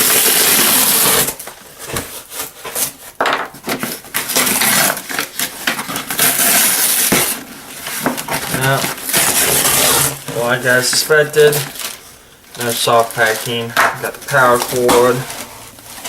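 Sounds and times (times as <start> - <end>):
packing scraped out of box: 0.0 - 12.0
rustling and clattering knocks: 3.2 - 3.9.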